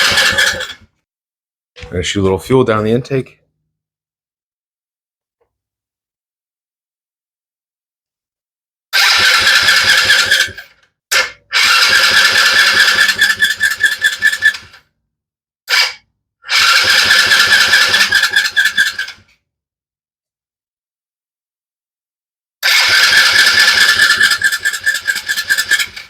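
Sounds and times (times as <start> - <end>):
small engine cranking with starter: 0.0 - 0.8, 9.0 - 14.8, 15.7 - 19.2, 22.6 - 26.0.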